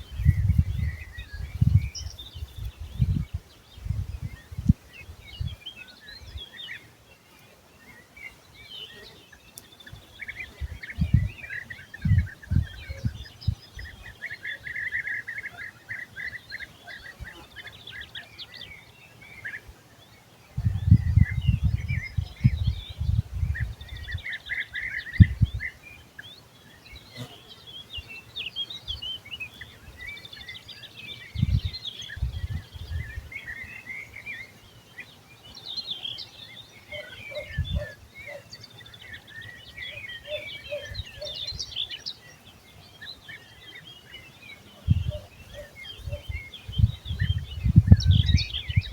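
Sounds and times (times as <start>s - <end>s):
low rumbles on microphone: 0.0s - 5.6s, 20.6s - 24.2s, 44.9s - 48.9s
birds chirping and trilling: 0.0s - 48.9s.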